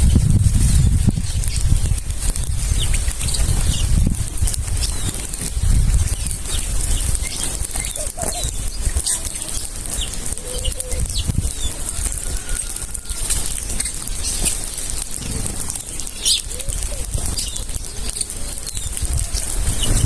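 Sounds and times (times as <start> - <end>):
wings flapping: 0.0 - 20.0
bird chirps: 6.1 - 14.9.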